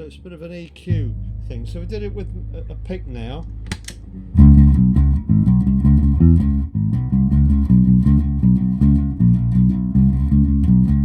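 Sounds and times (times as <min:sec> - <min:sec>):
electric bass picked low notes: 0:00.0 - 0:11.0.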